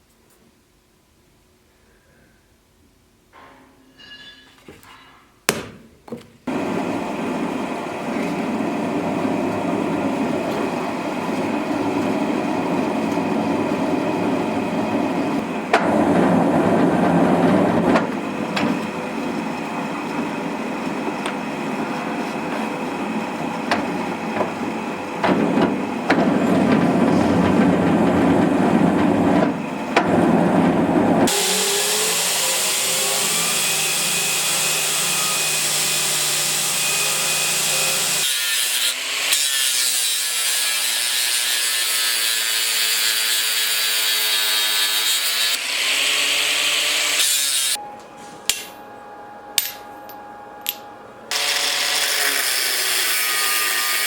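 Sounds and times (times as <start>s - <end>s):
workshop power tool running: 6.5s - 47.8s, 51.3s - 54.0s.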